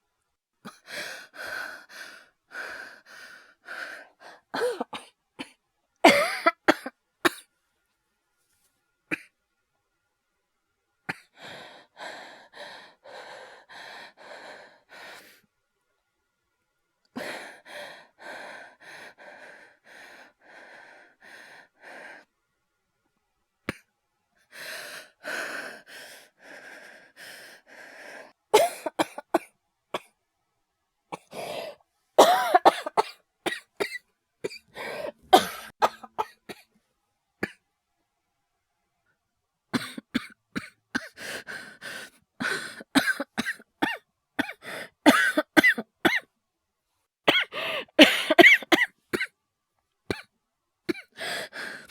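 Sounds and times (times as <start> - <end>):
man coughing harshly: 6.1 - 7.4, 28.6 - 29.5, 32.2 - 34.6, 35.4 - 36.6, 43.0 - 46.2, 47.3 - 49.3
man breathing quickly: 11.4 - 15.4, 17.2 - 22.3, 24.5 - 28.3, 47.5 - 48.0, 51.1 - 51.9.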